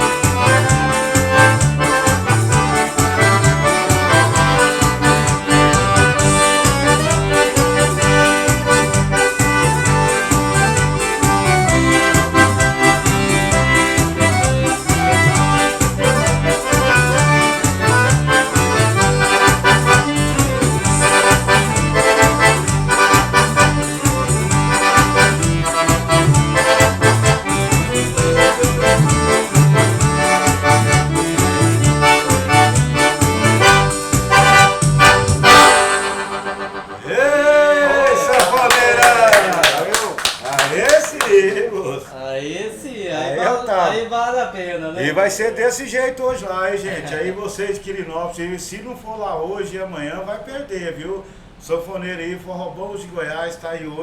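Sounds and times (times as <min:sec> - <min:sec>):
repeating bass beat: 0:00.0 - 0:35.8
accordion playing: 0:00.0 - 0:37.2.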